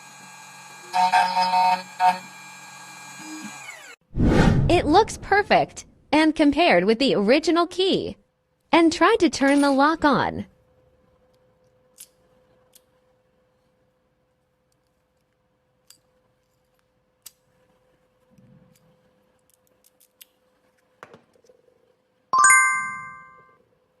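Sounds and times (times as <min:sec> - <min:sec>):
bell-like ding: 0:22.4 - 0:23.5.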